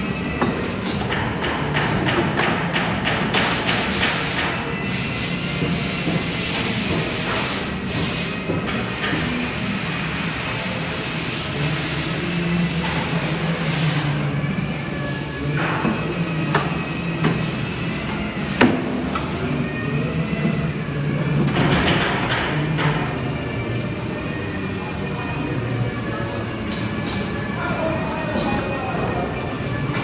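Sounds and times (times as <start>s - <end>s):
hiss of wood being worked: 2.5s - 20.8s.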